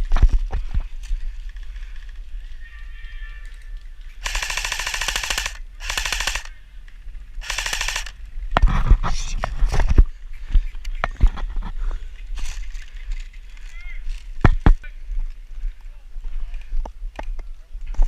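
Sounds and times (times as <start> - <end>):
airsoft gun firing full-auto: 4.2 - 6.6, 7.4 - 8.2.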